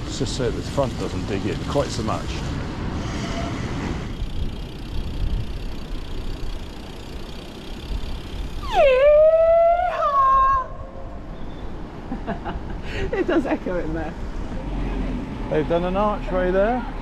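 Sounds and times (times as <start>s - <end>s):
wind rumbling on microphone: 0.8s - 6.8s
person howling: 8.6s - 11.0s.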